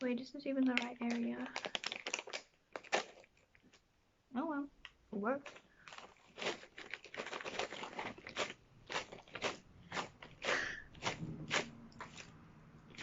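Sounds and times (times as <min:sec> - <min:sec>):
crunchy snack being chewed: 0:00.8 - 0:03.8, 0:05.4 - 0:13.0.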